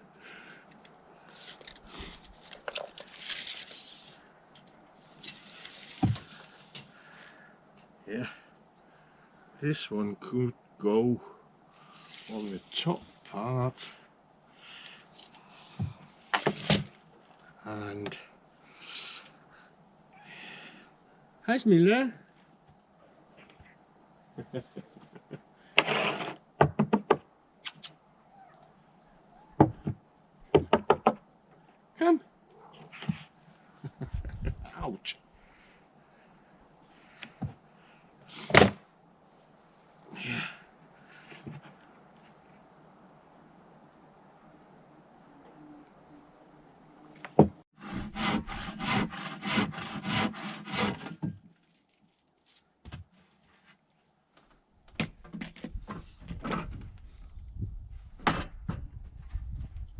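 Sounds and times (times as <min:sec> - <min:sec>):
hand saw cutting wood: 0:25.8 - 0:26.4, 0:47.8 - 0:51.3
wooden boards knocking and clattering: 0:26.6 - 0:27.2, 0:29.6 - 0:31.2.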